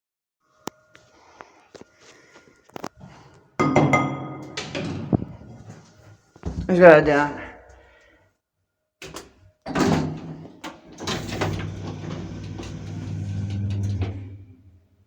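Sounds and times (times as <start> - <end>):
lift doors sliding shut: 9.0 - 14.8
lift moving hum: 9.7 - 14.9.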